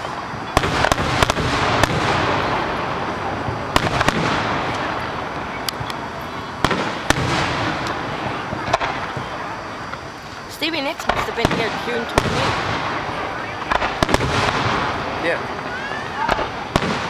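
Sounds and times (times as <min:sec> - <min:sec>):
fireworks bangs: 0:00.0 - 0:17.0
hissing of firework shells: 0:00.0 - 0:17.0.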